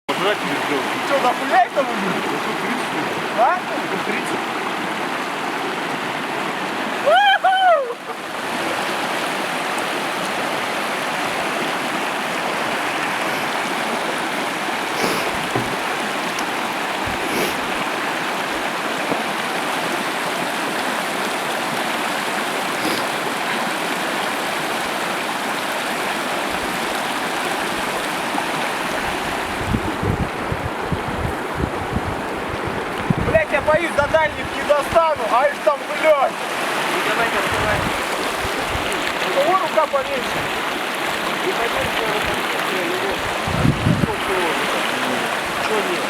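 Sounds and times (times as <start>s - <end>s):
river rushing over rocks: 0.1s - 46.0s
wind buffeting microphone: 17.0s - 17.8s, 28.8s - 35.3s, 37.4s - 39.2s, 40.3s - 44.5s.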